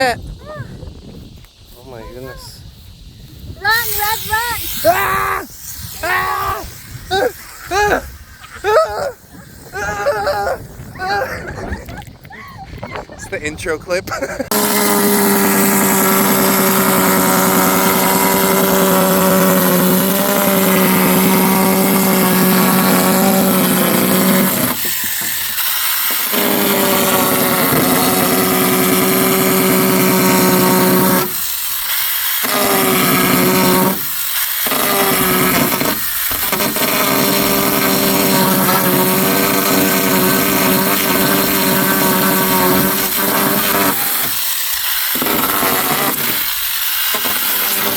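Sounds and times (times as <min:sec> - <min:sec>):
hiss of cutting: 0:00.0 - 0:11.3, 0:14.3 - 0:47.9
power tool motor running: 0:14.5 - 0:47.9.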